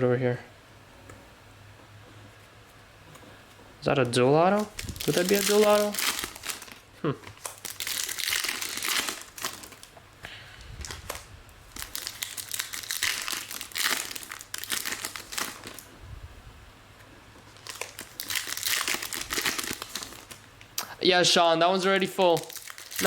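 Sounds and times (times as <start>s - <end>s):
plastic sleeves crinkling: 3.8s - 10.0s, 10.6s - 16.0s, 17.4s - 20.9s, 22.0s - 23.0s.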